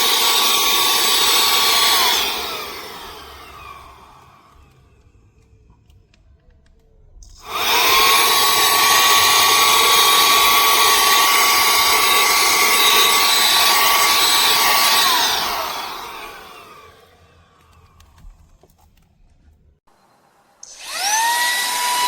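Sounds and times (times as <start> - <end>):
handheld vacuum cleaner whine: 0.0 - 5.7, 7.2 - 18.6, 20.6 - 22.0.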